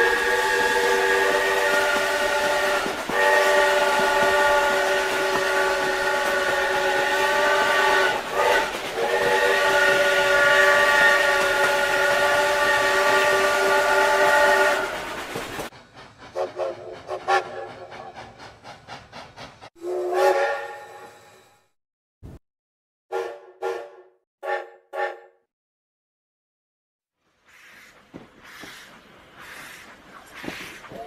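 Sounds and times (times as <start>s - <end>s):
steam locomotive chime whistle: 0.0s - 15.1s, 19.8s - 21.7s
hissing steam: 0.0s - 19.7s
even steam pulses: 0.0s - 20.9s.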